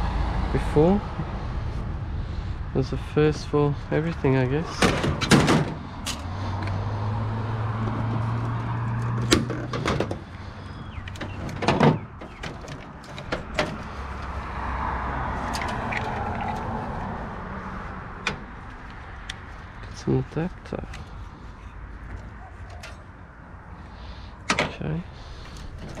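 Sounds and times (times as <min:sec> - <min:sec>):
metal computer case clattering: 0:04.7 - 0:06.2, 0:09.1 - 0:10.3, 0:11.1 - 0:13.9.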